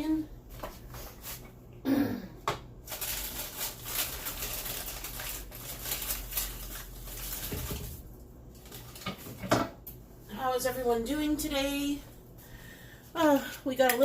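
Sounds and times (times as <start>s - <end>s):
food and utensils rustling: 0.1s - 1.6s, 2.8s - 10.4s.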